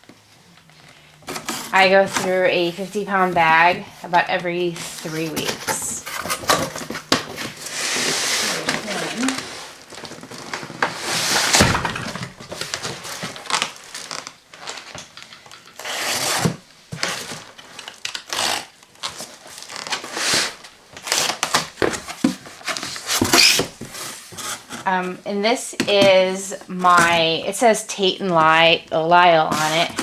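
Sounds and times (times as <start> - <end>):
cardboard box rustling: 0.8 - 14.9, 19.0 - 25.2, 25.8 - 27.5, 28.3 - 30.0
heavy thud: 11.4 - 12.5.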